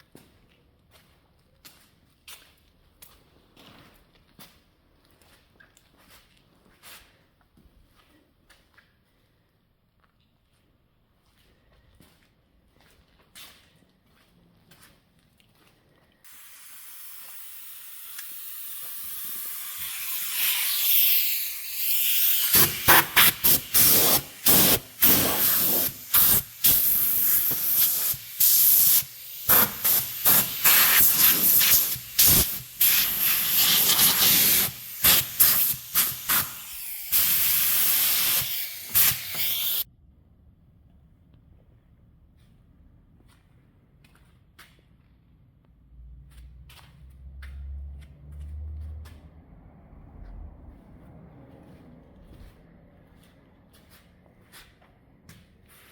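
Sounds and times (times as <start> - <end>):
paint spray gun hissing: 16.3 - 39.9.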